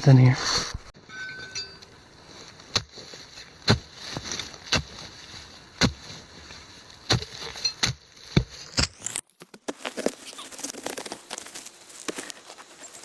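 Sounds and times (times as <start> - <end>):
digging tool chopping soil: 2.7 - 5.1, 5.7 - 11.4.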